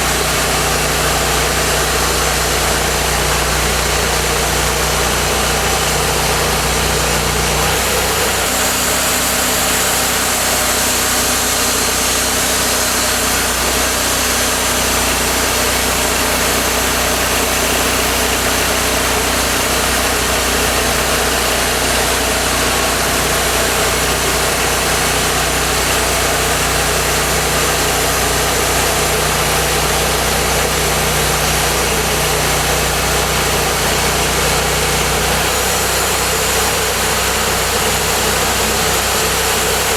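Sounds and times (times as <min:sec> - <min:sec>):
bandsaw sawmill cutting log: 0:00.0 - 0:39.9.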